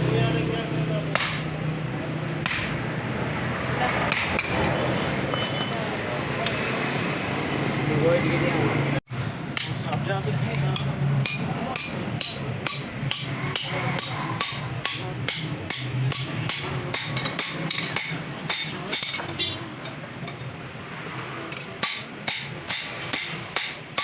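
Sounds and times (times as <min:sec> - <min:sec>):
hammer striking chisel on metal: 0:01.0 - 0:03.2, 0:03.9 - 0:06.8, 0:09.5 - 0:20.6, 0:21.5 - 0:24.0.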